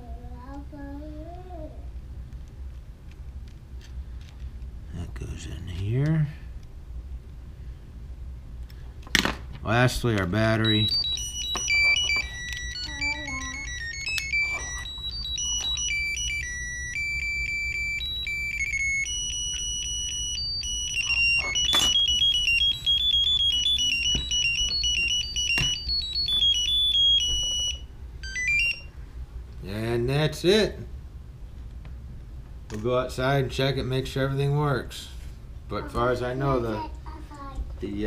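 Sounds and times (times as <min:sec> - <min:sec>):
high electronic beep tones: 0:10.6 - 0:28.9.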